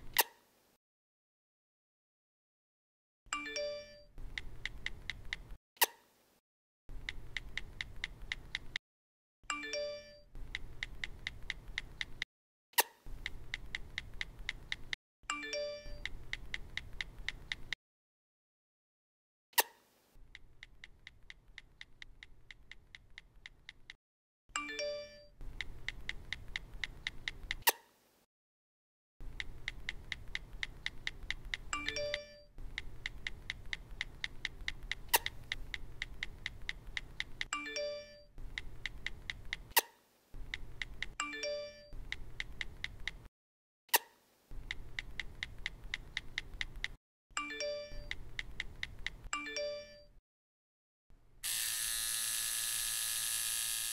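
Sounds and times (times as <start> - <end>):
bell-like chimes: 3.4 - 4.1, 15.3 - 16.0
fast even ticking: 7.0 - 8.8, 29.2 - 37.5, 44.6 - 47.0
music with ticking beat: 9.6 - 12.2, 13.2 - 17.7, 29.2 - 39.8, 40.4 - 43.3, 44.6 - 50.1
sharp click: 35.0 - 35.4.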